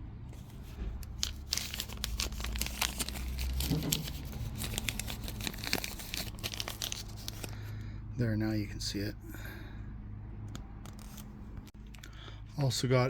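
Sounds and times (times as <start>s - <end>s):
packaging crinkling: 0.6s - 7.7s.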